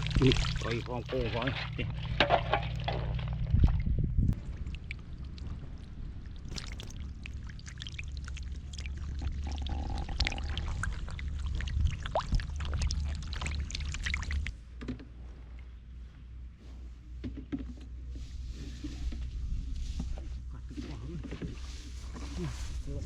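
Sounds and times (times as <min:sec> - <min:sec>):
water splashing and pouring: 0:00.0 - 0:14.6
low rumble: 0:00.0 - 0:17.1.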